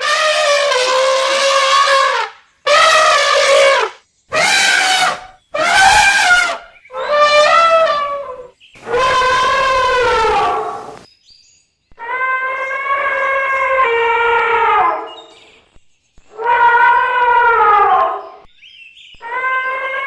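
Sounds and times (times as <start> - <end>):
elephants trumpeting: 0.0 - 11.0, 16.3 - 18.4.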